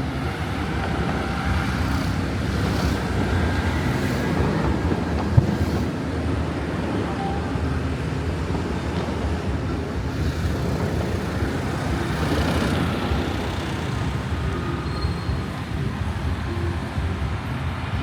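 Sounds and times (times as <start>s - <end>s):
traffic rumble: 0.0s - 18.0s.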